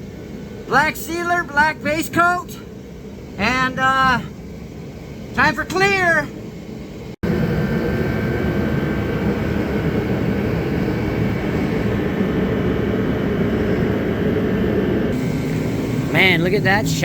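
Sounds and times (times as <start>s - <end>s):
paint sprayer machine drone: 7.3s - 17.0s.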